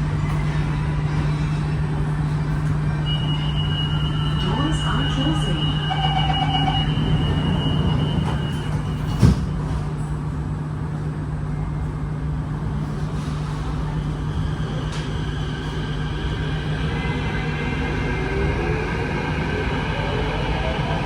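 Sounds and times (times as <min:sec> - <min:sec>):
train car hum: 0:00.0 - 0:21.0
door-closing warning tone: 0:03.1 - 0:09.8.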